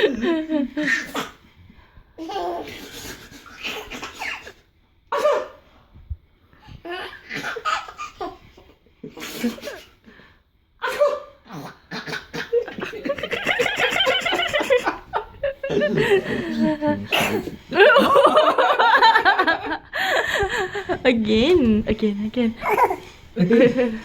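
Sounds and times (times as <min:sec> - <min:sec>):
baby giggling: 0:00.0 - 0:01.4, 0:02.2 - 0:04.6, 0:12.0 - 0:19.6, 0:22.6 - 0:24.0
man sneezing: 0:15.9 - 0:17.6.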